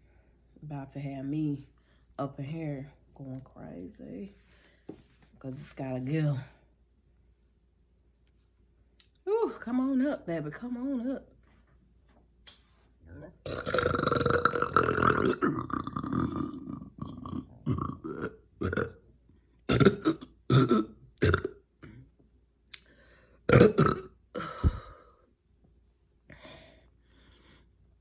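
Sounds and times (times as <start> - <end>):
woman burping: 13.4 - 19.0, 19.7 - 22.2, 23.5 - 25.1.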